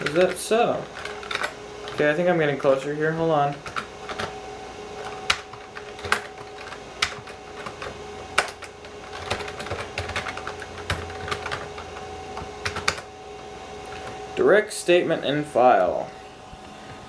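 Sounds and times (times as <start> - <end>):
slow keyboard typing: 0.0 - 2.1, 3.5 - 4.4, 5.0 - 13.1
steady two-note hum: 0.0 - 17.0.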